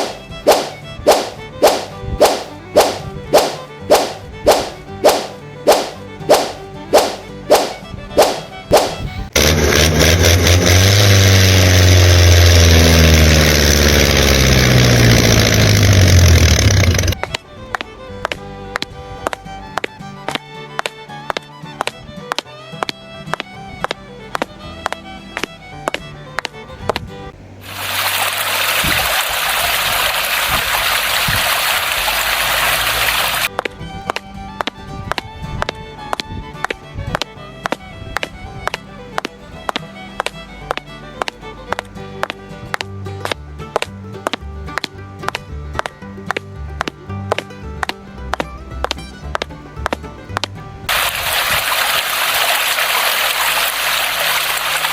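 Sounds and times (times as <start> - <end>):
engine humming: 0.0 - 54.9
running water rushing: 27.6 - 33.5, 50.9 - 54.9.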